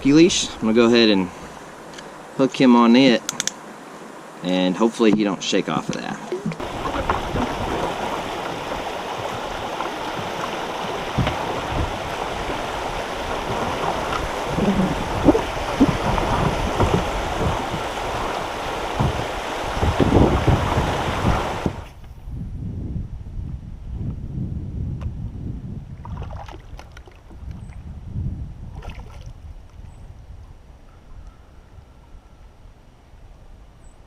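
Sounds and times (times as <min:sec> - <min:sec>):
creek water running: 0:00.0 - 0:21.9
wind gusting on microphone: 0:06.3 - 0:34.0.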